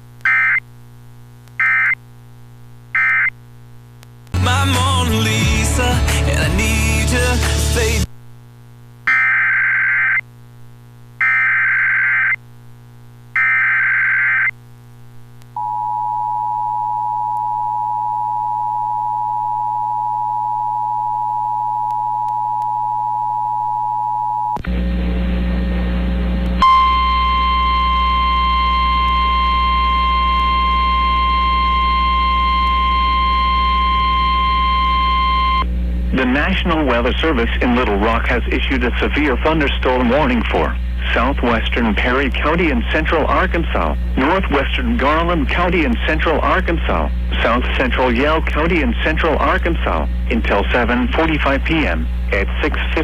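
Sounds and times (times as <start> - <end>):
data tone bursts: 1.6 - 2.0, 3.0 - 3.3, 9.1 - 10.2, 11.2 - 12.4
steady warning alarm tone: 13.4 - 14.5, 26.6 - 35.6
two-tone attention signal: 26.6 - 35.6.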